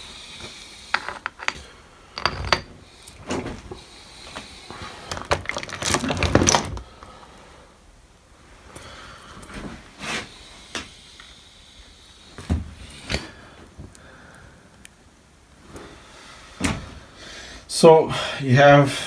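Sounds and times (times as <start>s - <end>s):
metal gears clinking and knocking: 0.9s - 3.6s, 5.1s - 6.9s.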